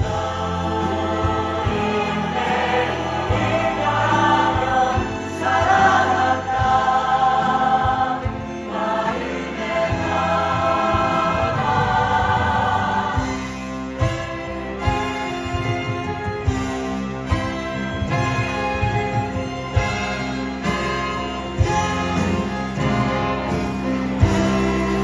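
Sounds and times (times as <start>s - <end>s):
voices singing in chorus: 0.0s - 15.8s
instrumental accompaniment: 0.0s - 25.0s.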